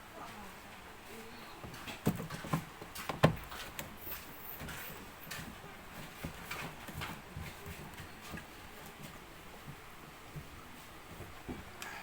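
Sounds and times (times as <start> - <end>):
handling knocks and clicks: 1.8 - 4.0.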